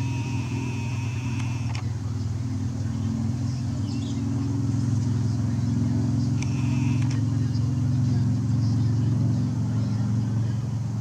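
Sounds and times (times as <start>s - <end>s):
lens zoom motor whine: 0.0s - 2.0s, 6.4s - 7.3s
steady low rumble: 0.0s - 11.0s.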